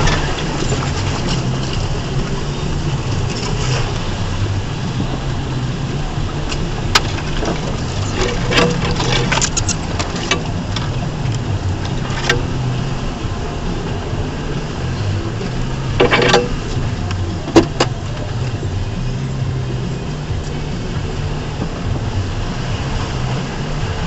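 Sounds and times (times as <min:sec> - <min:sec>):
truck engine at low revs: 0:00.0 - 0:24.0
truck body knocks and rattles: 0:06.3 - 0:12.8, 0:14.8 - 0:18.5.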